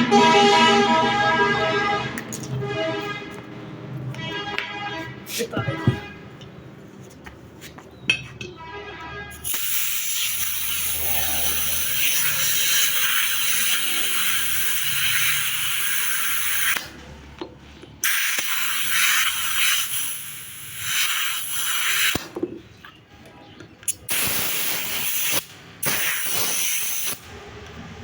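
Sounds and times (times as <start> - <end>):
compressed air hissing: 9.4 - 16.8, 18.0 - 22.3, 23.9 - 27.3.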